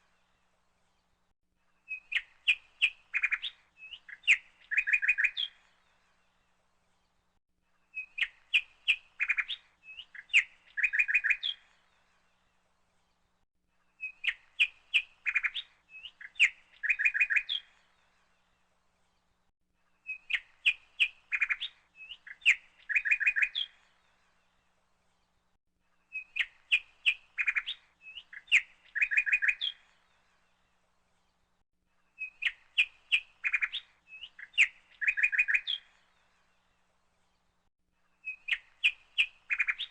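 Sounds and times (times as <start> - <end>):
bird chirps and trills: 1.8 - 6.3, 7.9 - 12.0, 13.8 - 18.4, 20.0 - 24.5, 26.0 - 30.6, 32.1 - 36.8, 38.0 - 39.9.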